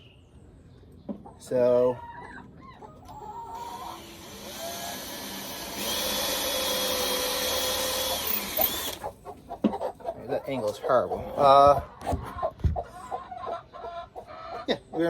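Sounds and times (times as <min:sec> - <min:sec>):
chickens clucking: 0:00.7 - 0:05.0, 0:08.3 - 0:15.0
cordless drill motor running: 0:03.6 - 0:09.0.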